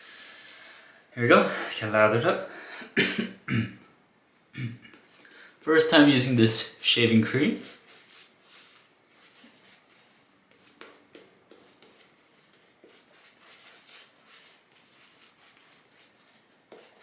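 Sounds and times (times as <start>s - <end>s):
shaving brush strokes: 5.0s - 17.0s.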